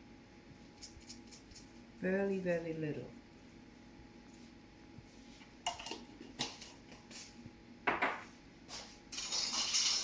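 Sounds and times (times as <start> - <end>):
clattering rattle: 9.1 - 10.0
utensils clinking on dishes: 9.1 - 10.0.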